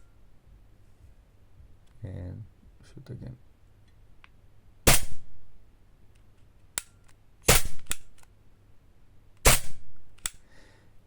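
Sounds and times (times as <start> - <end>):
airsoft pistol shots: 4.9 - 5.3, 7.4 - 8.2, 9.4 - 10.4.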